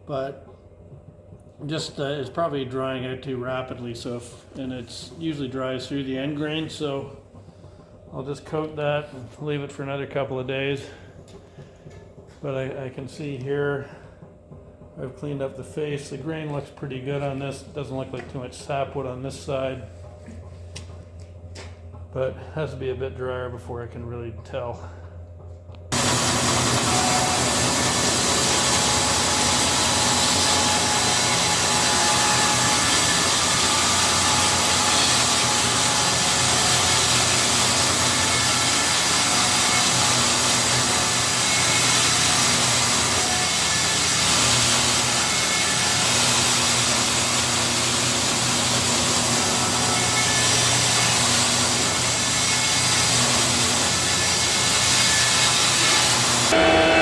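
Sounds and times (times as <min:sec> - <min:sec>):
power saw ripping lumber: 0:25.9 - 0:57.0.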